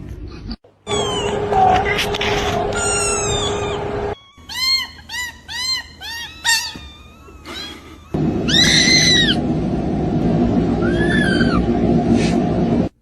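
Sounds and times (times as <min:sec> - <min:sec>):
kitten mewing: 0:00.9 - 0:05.0, 0:06.1 - 0:09.4.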